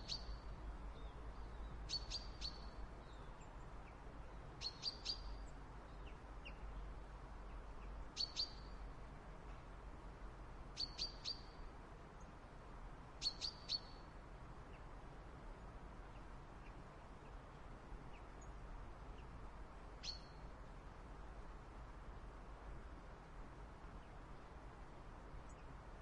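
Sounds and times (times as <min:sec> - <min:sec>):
small bird chip calls: 0:00.0 - 0:03.3, 0:04.6 - 0:06.6, 0:07.8 - 0:08.8, 0:10.8 - 0:11.6, 0:13.2 - 0:14.0
faint low background rumble: 0:00.0 - 0:26.0.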